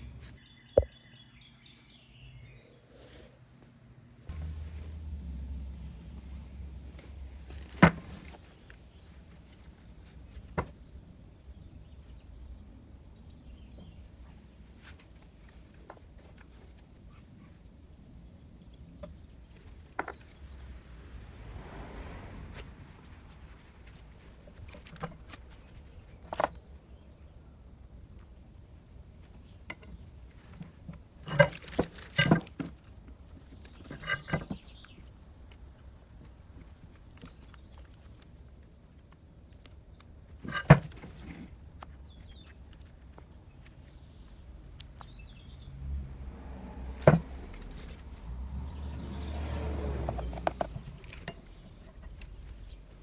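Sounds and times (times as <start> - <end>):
low background hum: 0.0 - 21.4
handling clicks and knocks: 50.0 - 53.0.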